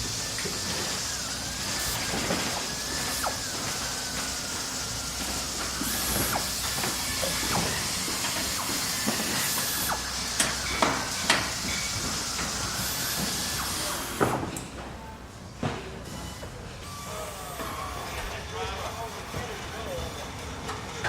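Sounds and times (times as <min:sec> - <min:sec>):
steady hiss of escaping air: 0:00.0 - 0:14.4
machines knocking and clanking: 0:00.0 - 0:15.0.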